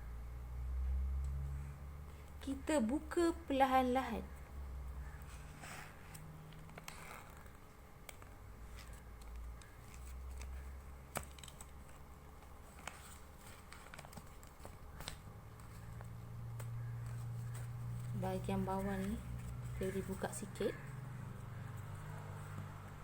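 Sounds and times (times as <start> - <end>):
paper crinkling and rustling: 5.0 - 23.0.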